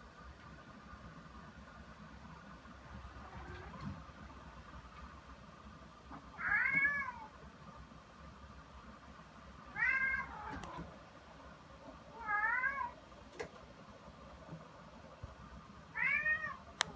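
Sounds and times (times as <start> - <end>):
cat meowing: 6.4 - 7.3, 9.7 - 10.8, 12.2 - 13.0, 15.9 - 16.6.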